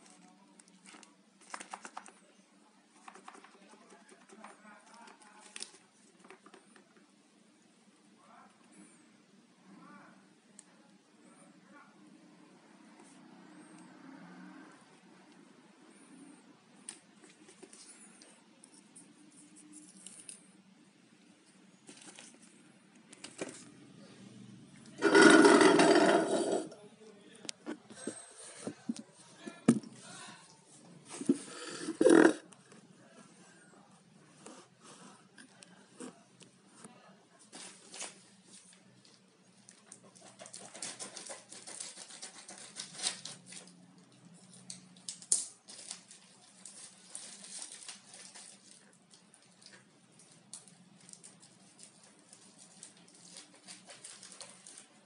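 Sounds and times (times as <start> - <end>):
packaging rustling and scraping: 25.0 - 26.7
packaging rustling and crinkling: 45.6 - 48.9.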